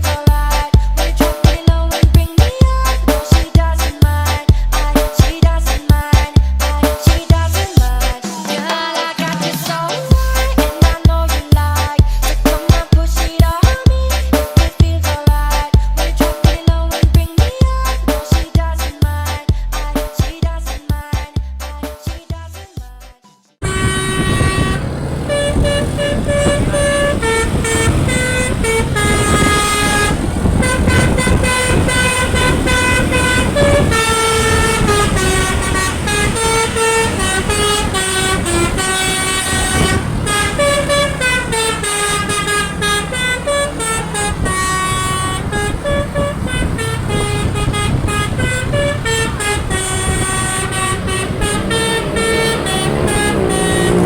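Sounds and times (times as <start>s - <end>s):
multi-trumpet bus horn tune: 0.0s - 16.7s, 23.6s - 54.0s
bus engine running: 0.0s - 22.5s, 23.6s - 54.0s.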